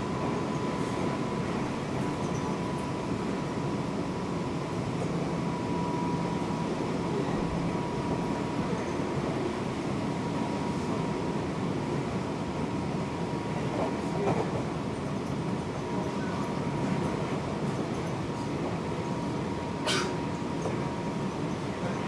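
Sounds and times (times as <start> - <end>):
train wheels rumbling on rail: 0.0 - 22.0.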